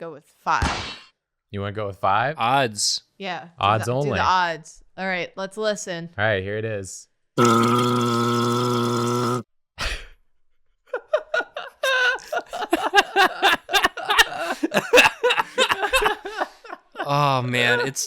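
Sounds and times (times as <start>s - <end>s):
squelchy wet mouth noises: 7.4s - 9.4s.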